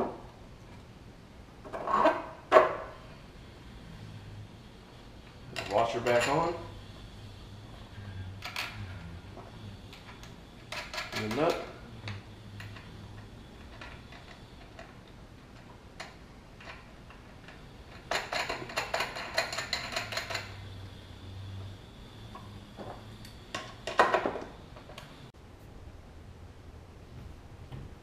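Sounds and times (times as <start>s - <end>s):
metal clatter: 7.9s - 20.7s.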